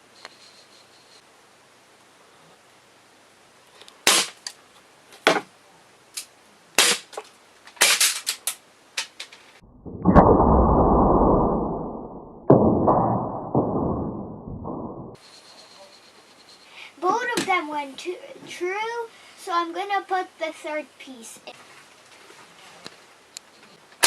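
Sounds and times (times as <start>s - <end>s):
airsoft pistol shots: 4.1s - 4.4s, 6.8s - 7.1s
shots hitting cardboard: 4.1s - 4.4s, 6.8s - 7.2s
loud muffled rumbling: 9.6s - 15.2s.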